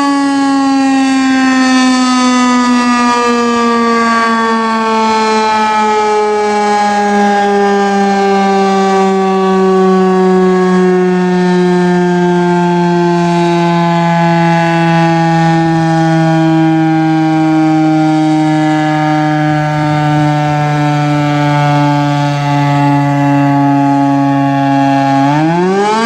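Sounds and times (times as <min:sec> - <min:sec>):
warning siren steady tone: 0:00.0 - 0:26.0.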